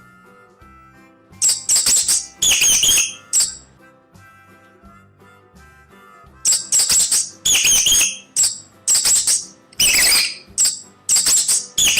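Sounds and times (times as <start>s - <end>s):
soft background music: 0.0s - 11.9s
mice squeaking: 1.4s - 3.6s, 6.5s - 11.9s.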